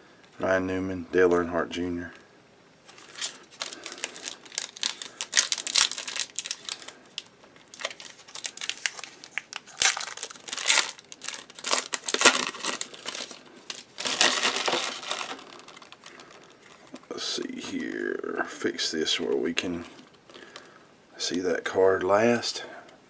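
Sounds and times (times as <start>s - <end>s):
packaging tearing: 2.9s - 17.1s
plastic packaging crinkling: 2.9s - 17.8s.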